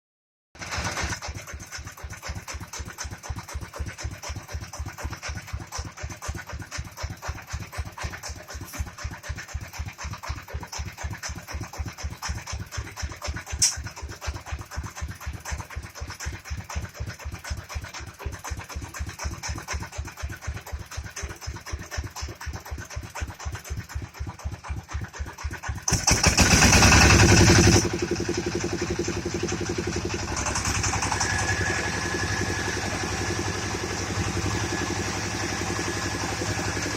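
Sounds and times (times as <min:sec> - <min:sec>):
engine putt-putt: 0:00.6 - 0:36.9
sharp click: 0:13.5 - 0:13.9.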